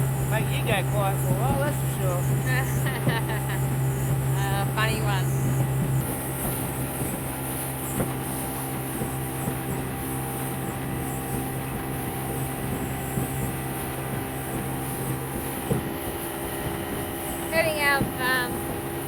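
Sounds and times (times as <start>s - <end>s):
boat motor running: 0.0s - 19.0s.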